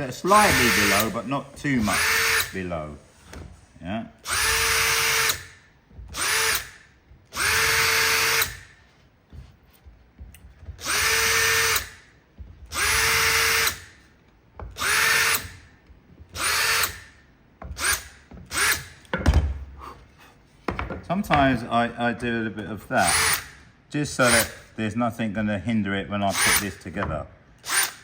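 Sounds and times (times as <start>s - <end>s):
power drill countersinking wood: 0.0s - 2.7s, 4.3s - 8.8s, 10.6s - 12.0s, 12.7s - 14.0s, 26.3s - 27.0s.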